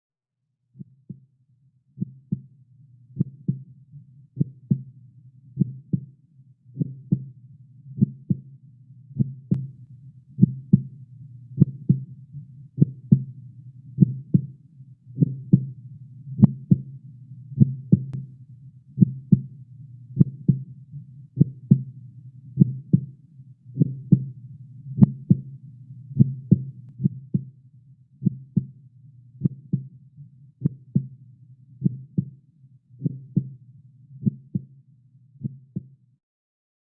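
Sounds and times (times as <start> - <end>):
heartbeat thumps: 3.2 - 3.7, 4.4 - 4.9, 5.6 - 6.1, 6.8 - 7.4, 8.0 - 8.5, 10.4 - 10.9, 11.6 - 12.1, 12.8 - 13.4, 14.0 - 14.5, 15.2 - 15.8, 16.4 - 16.9, 17.6 - 18.2, 19.0 - 19.5, 20.2 - 20.7, 21.4 - 21.9, 22.6 - 23.1, 23.8 - 24.4, 25.0 - 25.5, 26.2 - 27.5, 28.2 - 28.8, 29.4 - 29.9, 30.6 - 31.1, 31.8 - 32.3, 33.0 - 33.6, 34.2 - 34.7, 35.4 - 35.9.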